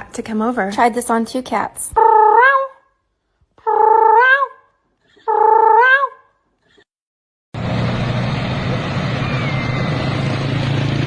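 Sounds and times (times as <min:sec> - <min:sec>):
loud noise with low hum: 0:07.6 - 0:11.0.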